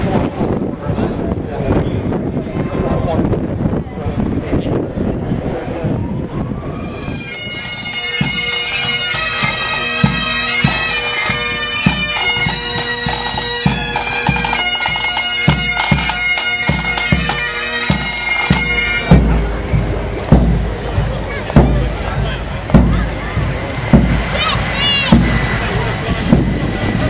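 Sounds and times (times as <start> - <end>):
bagpipe music: 6.7 - 25.8
drum strokes: 7.1 - 27.0
low rumble: 19.0 - 27.0.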